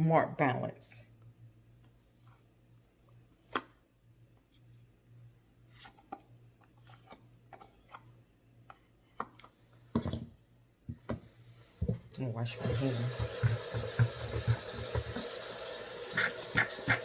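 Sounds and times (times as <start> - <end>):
clicks and knocks of kitchen items: 12.8 - 15.4.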